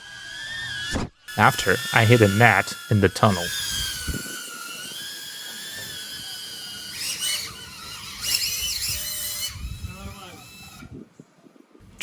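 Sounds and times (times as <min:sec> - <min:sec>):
drone propellers whining: 0:01.3 - 0:10.8.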